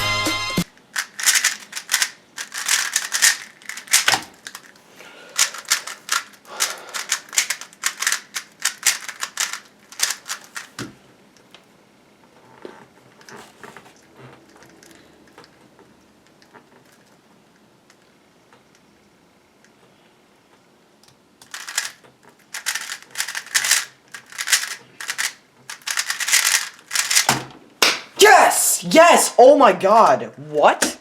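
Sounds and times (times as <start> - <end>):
puzzle cube clicking: 1.0 - 4.8, 5.4 - 10.9, 21.4 - 27.3.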